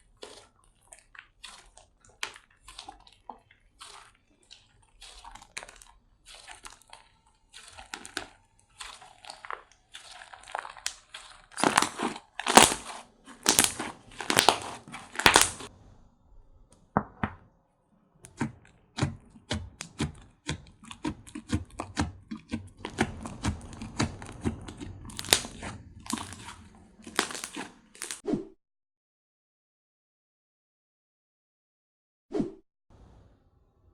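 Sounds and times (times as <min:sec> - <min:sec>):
slime squishing and popping: 0:00.0 - 0:15.7, 0:18.3 - 0:28.2.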